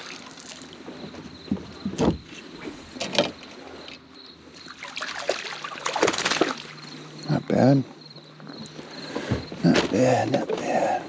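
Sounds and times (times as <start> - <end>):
faint high insect chirping: 0.0 - 11.0
knocks and handling on kayak: 0.8 - 4.0, 8.4 - 10.9.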